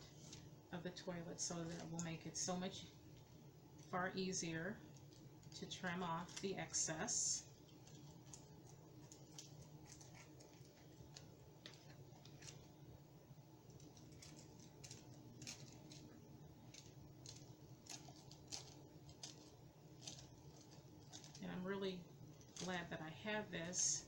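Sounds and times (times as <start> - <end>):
paper clicks and crinkles: 0.0 - 0.6, 1.4 - 2.4, 4.8 - 12.8, 13.6 - 21.5, 22.3 - 22.9
quiet room hum: 0.0 - 24.0.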